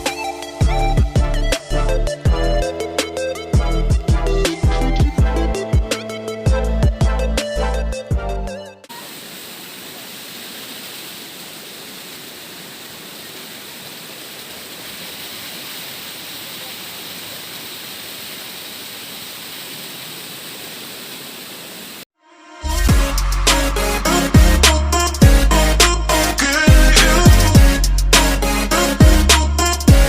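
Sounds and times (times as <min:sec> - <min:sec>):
waterfall roaring: 0:08.9 - 0:22.0
music sting: 0:22.4 - 0:28.4.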